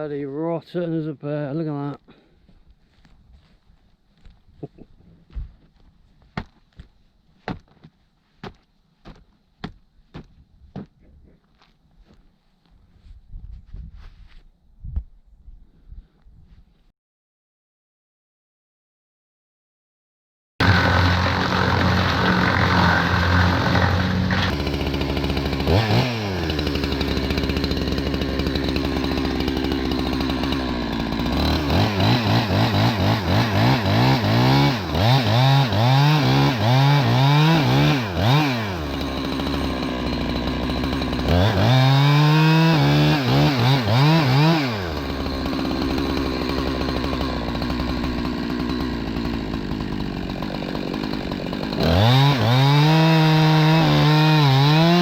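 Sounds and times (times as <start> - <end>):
chainsaw revving and idling: 20.6 - 55.0.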